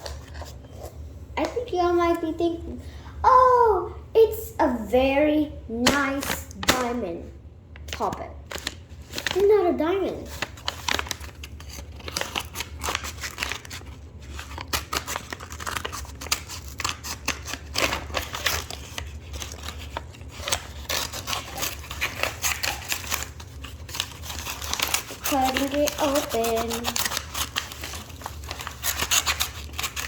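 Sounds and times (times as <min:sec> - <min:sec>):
scissors snipping packaging: 0:10.3 - 0:30.0.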